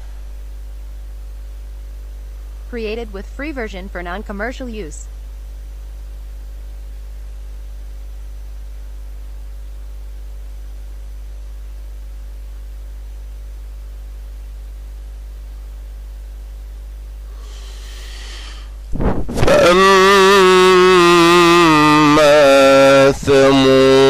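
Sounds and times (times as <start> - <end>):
electrical mains hum: 0.0 - 24.0
steady hiss: 17.2 - 19.7.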